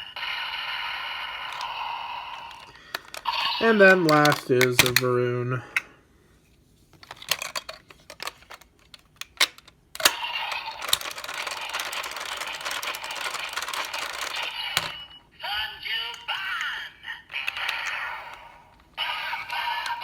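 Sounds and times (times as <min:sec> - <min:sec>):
sharp plastic clicks: 0:02.5 - 0:05.1, 0:07.0 - 0:15.0.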